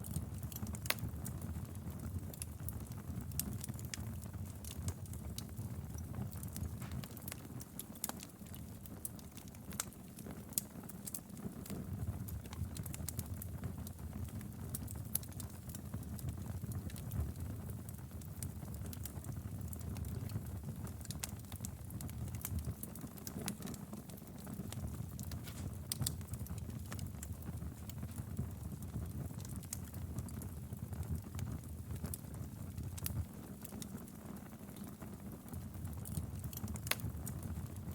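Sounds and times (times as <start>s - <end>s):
low rumble of flames: 0.0s - 37.9s
wood fire crackling: 0.0s - 37.9s
sharp pops and snaps: 6.3s - 11.2s, 24.5s - 28.4s.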